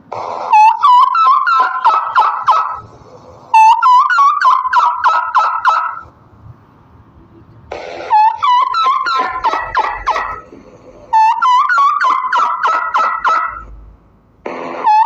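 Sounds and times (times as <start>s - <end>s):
turkey gobbling: 0.4s - 2.8s, 3.5s - 6.1s, 8.1s - 10.4s, 11.1s - 13.7s.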